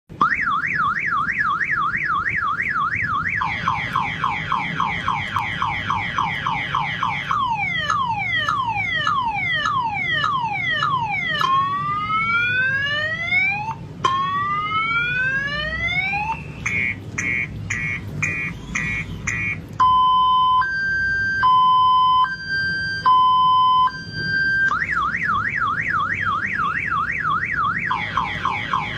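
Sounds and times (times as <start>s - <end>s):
man imitating car alarm: 16.2s - 20.8s.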